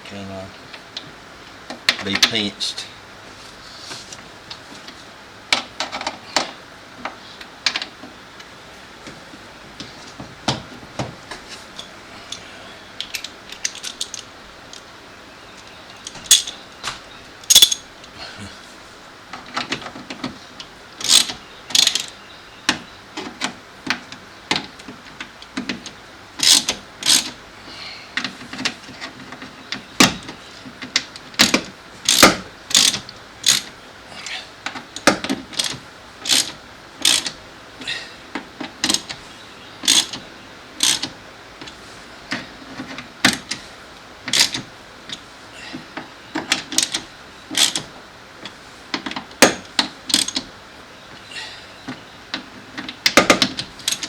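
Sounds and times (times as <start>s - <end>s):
hand ratchet clicking: 13.0s - 14.8s, 15.6s - 16.6s, 17.5s - 17.8s, 21.0s - 22.1s, 25.6s - 27.4s, 30.0s - 37.4s, 38.8s - 39.2s, 39.8s - 40.2s, 40.8s - 42.4s, 44.3s - 44.6s, 46.4s - 47.9s, 49.0s - 50.4s, 53.1s - 54.0s.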